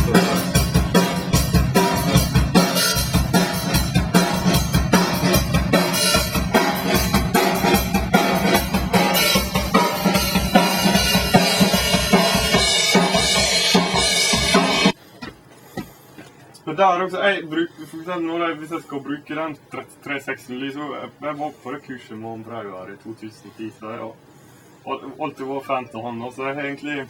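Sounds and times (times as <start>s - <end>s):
rock music playing: 0.0s - 15.0s
drum kit kick and snare: 0.0s - 15.9s.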